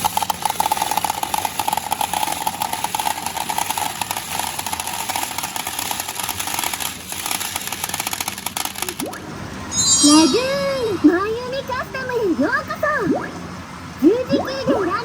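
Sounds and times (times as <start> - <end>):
pulsing electronic tone: 9.1 - 11.3.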